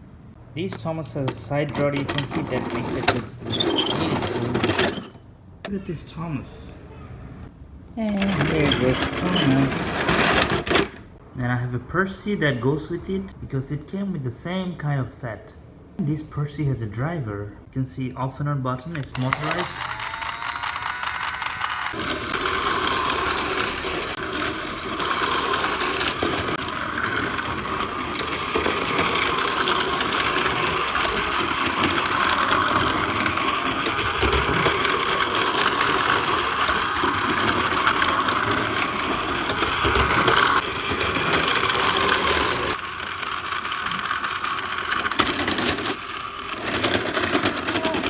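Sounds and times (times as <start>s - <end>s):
toy engine motor whirring: 1.8s - 5.2s, 18.9s - 48.0s.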